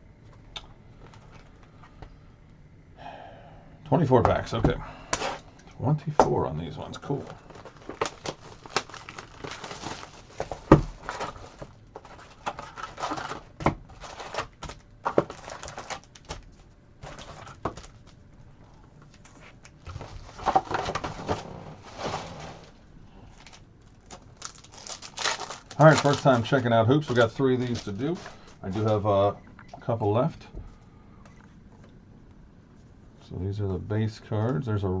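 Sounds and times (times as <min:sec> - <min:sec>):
paper and plastic rustling: 0:07.1 - 0:18.2, 0:19.0 - 0:29.2.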